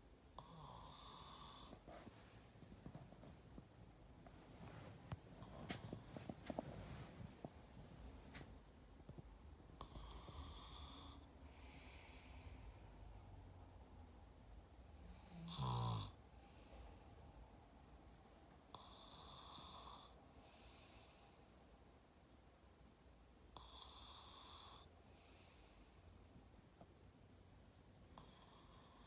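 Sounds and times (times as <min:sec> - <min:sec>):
quiet hissing breaths: 0:00.0 - 0:29.0
man snoring: 0:15.2 - 0:16.2.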